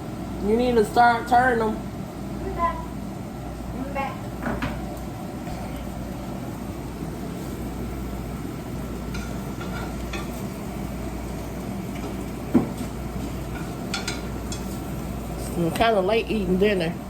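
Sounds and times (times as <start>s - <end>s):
shrimp sizzling in a pan: 7.2s - 16.6s.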